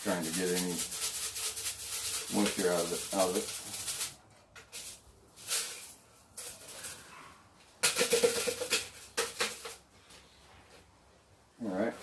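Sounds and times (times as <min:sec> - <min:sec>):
sand scooped and poured: 0:00.0 - 0:03.7.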